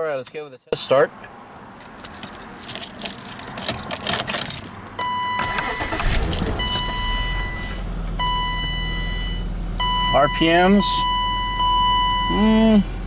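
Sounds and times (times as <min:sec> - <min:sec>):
car engine starting and idling: 0:01.0 - 0:13.0
keys jangling in ignition: 0:01.7 - 0:07.7.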